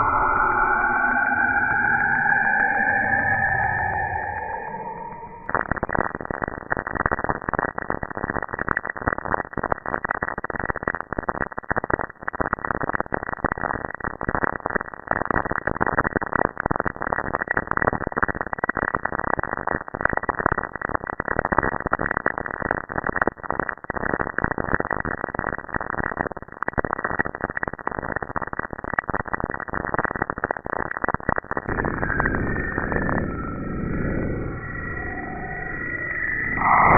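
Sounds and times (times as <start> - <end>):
deep rumble with gliding tones: 0.0 - 5.5, 31.8 - 36.9
crackling static with clicks: 5.3 - 36.9.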